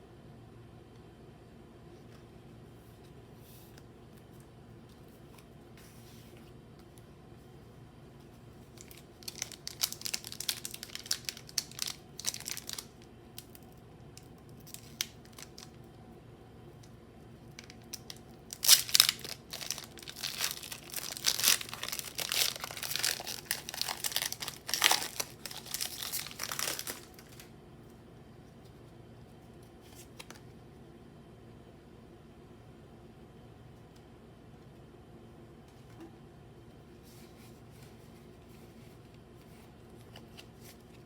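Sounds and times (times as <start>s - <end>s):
foil wrapper crinkling and tearing: 8.7s - 15.8s, 17.5s - 27.5s.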